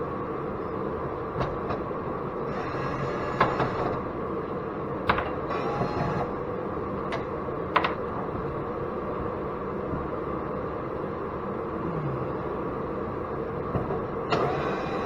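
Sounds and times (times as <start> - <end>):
heater running: 12.4 - 15.0.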